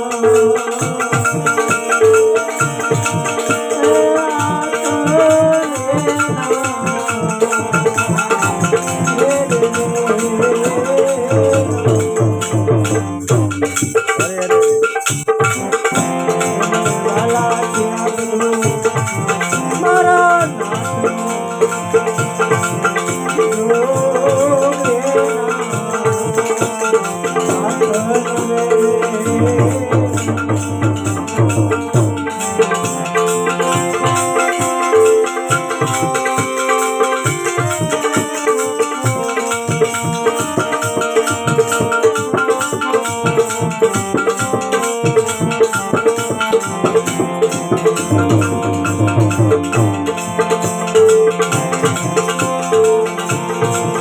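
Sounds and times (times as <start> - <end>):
hand percussion: 0.0 - 54.0.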